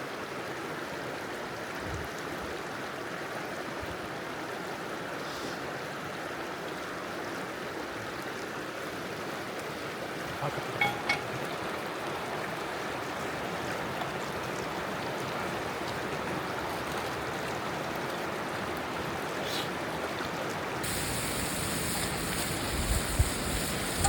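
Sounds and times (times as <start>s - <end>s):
river water rushing: 8.6s - 20.8s
wind buffeting microphone: 20.9s - 24.0s.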